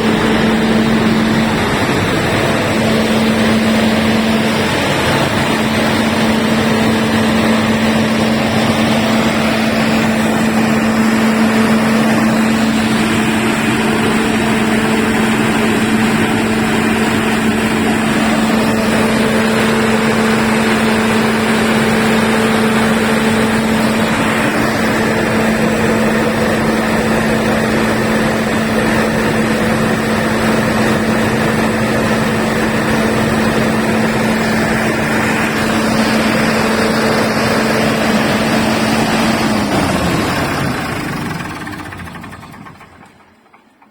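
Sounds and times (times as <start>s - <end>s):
diesel generator running: 0.0s - 43.9s.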